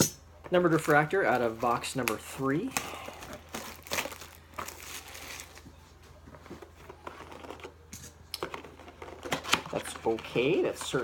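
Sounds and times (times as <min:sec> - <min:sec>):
foil wrapper crinkling: 0:00.7 - 0:05.7.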